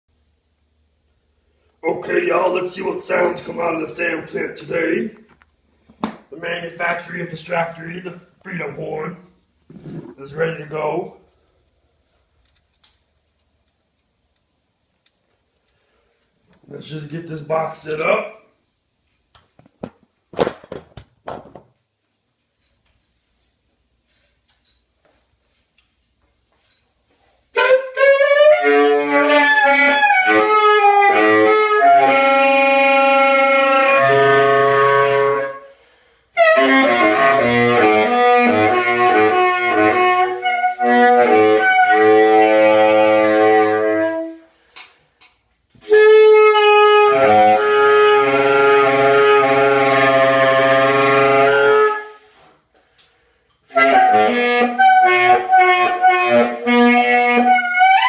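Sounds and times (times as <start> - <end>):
free jazz saxophone: 6.4 - 11.2, 27.5 - 44.7, 45.7 - 52.5, 53.6 - 58.0.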